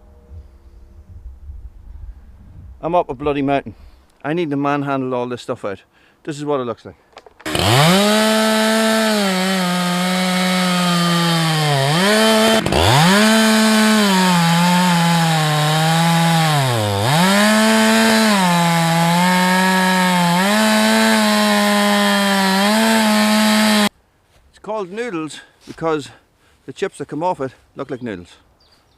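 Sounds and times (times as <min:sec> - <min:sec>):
chainsaw ripping a log: 0:07.3 - 0:23.9.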